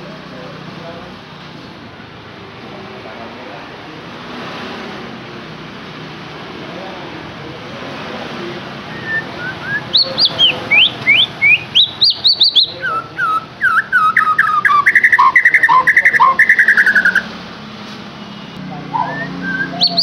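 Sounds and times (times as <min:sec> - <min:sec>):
songbird singing: 0:08.9 - 0:17.4, 0:18.6 - 0:20.0.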